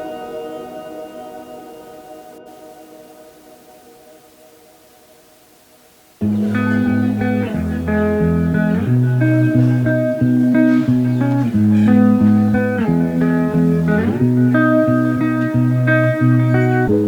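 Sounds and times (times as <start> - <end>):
bass line: 6.2 - 17.0
plucked guitar: 6.2 - 17.0.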